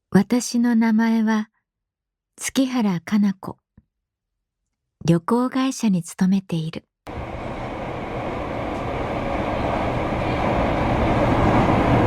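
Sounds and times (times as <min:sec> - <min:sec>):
passenger train rumbling: 0:07.1 - 0:12.0.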